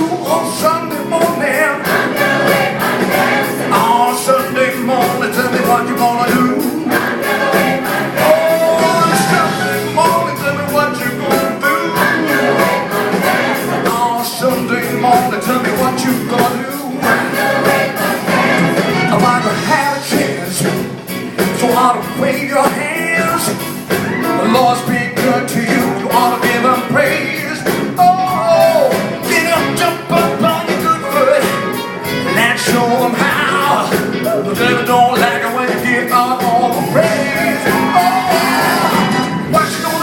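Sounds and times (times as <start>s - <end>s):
band playing: 0.0s - 40.0s
choir singing: 1.4s - 20.4s, 33.0s - 40.0s.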